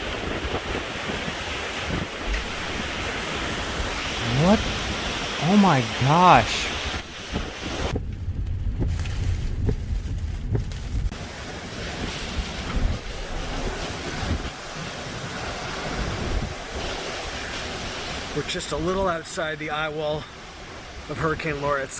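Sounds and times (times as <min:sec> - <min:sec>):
storm noise hiss: 0:02.0 - 0:08.0
wind buffeting microphone: 0:06.7 - 0:11.1.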